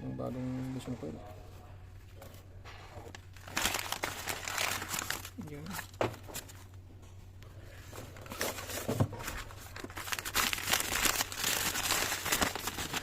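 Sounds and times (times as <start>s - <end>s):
plastic packaging crinkling: 3.1s - 6.7s, 8.0s - 13.0s.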